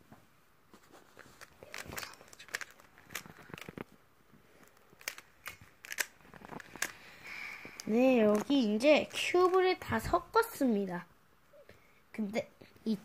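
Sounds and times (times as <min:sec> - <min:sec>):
plastic puzzle cube clicking: 0:01.4 - 0:03.9, 0:04.6 - 0:07.0.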